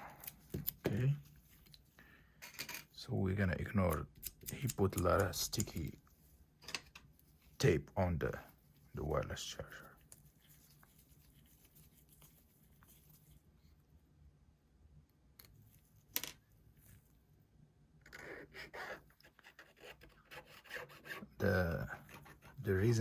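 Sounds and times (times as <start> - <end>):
hand tool scraping on phone: 18.1 - 22.8.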